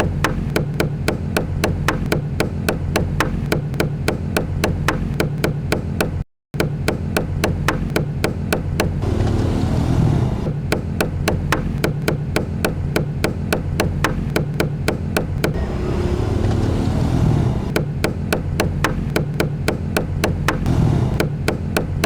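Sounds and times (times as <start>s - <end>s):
low hum: 9.0s - 10.5s, 15.6s - 17.8s, 20.7s - 21.3s.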